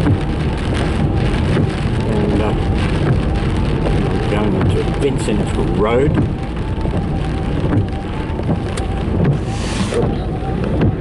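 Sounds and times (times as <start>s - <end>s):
car road and engine rumble: 0.0s - 11.0s
brief hiss: 9.4s - 10.0s.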